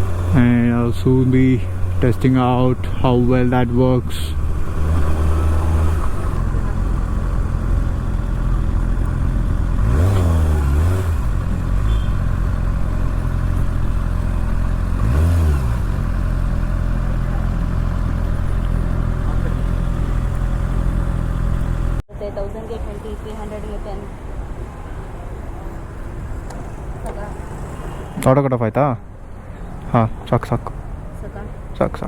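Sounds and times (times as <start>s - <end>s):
motorcycle engine revving: 0.0s - 22.0s.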